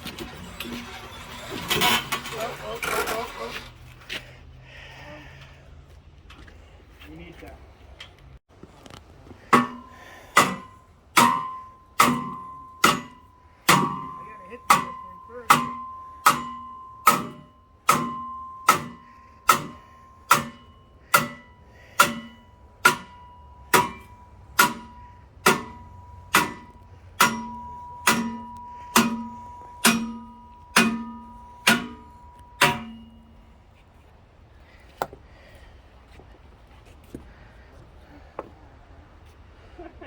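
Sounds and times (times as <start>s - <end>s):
hammer blows on metal: 9.5s - 33.5s.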